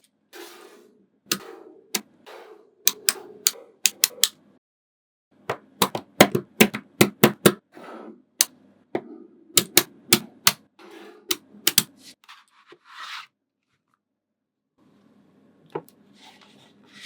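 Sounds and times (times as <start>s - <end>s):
soft sliding and scraping: 12.0s - 14.0s, 16.1s - 17.0s.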